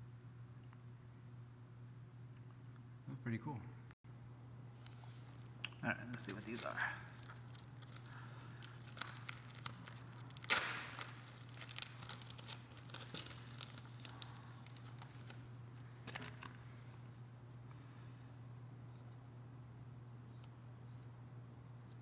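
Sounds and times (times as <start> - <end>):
packaging ripping: 6.1 - 15.4, 16.0 - 16.6
packaging crinkling and rustling: 6.1 - 16.6.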